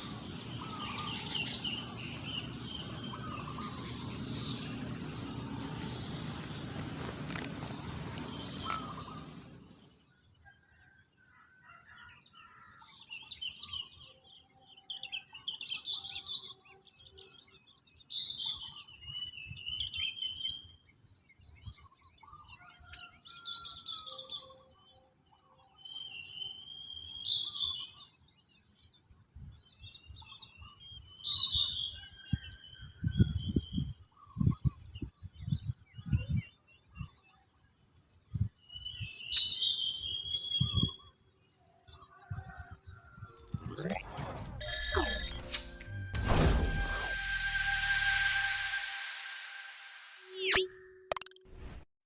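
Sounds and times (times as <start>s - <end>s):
birds singing: 0.0s - 11.0s, 11.8s - 45.5s.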